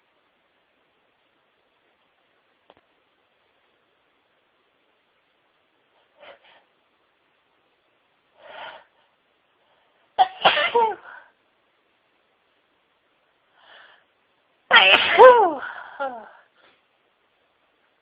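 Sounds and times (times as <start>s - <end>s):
woman sneezing: 10.2s - 11.2s, 14.7s - 16.4s
faint intake of breath: 13.5s - 14.2s.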